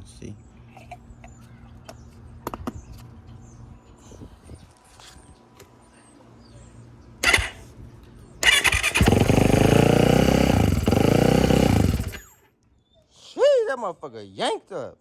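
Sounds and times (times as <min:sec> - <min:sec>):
dirt bike engine running: 0:07.2 - 0:07.7, 0:08.4 - 0:12.4.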